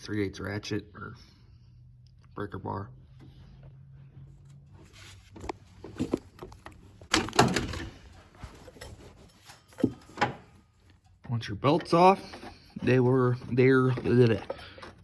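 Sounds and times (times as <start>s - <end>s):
metal tools clanking: 7.1s - 15.0s.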